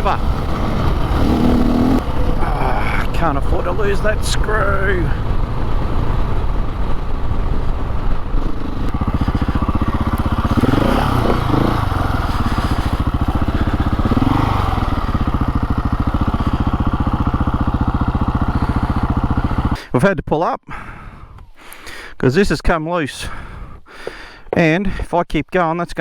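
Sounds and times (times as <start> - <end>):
dirt bike engine idling: 0.0 - 19.8.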